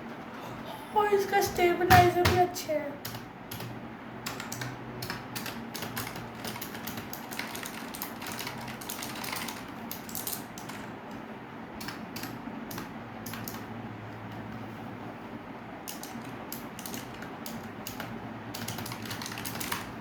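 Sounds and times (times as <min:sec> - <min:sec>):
clicky keyboard typing: 0:04.3 - 0:11.2, 0:11.8 - 0:13.7, 0:15.9 - 0:19.9.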